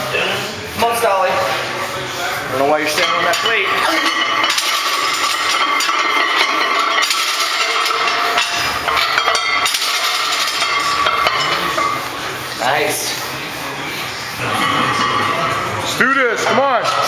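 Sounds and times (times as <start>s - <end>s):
metal weights clanking: 2.6s - 12.7s, 14.4s - 17.0s.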